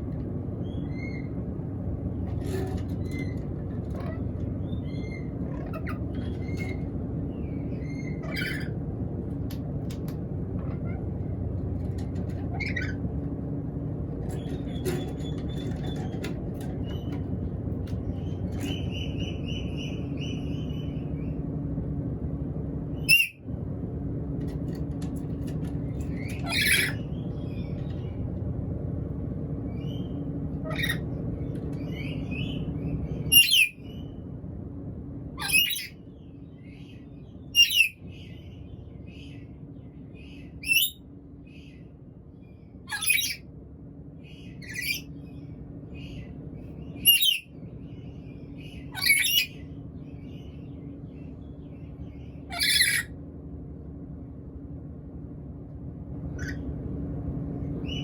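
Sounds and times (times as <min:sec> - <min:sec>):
parrot squawking: 0:07.8 - 0:08.8, 0:12.5 - 0:13.0, 0:23.0 - 0:23.4, 0:26.2 - 0:27.0, 0:30.6 - 0:31.1, 0:33.3 - 0:33.8, 0:35.4 - 0:36.0, 0:37.5 - 0:38.0, 0:40.6 - 0:41.0, 0:42.9 - 0:43.4, 0:44.6 - 0:45.1, 0:47.0 - 0:47.5, 0:48.6 - 0:49.6, 0:52.5 - 0:53.2.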